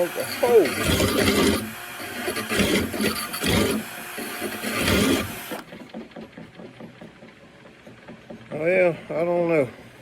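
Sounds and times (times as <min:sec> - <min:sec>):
drill grinding lawnmower blade: 0:00.0 - 0:07.1.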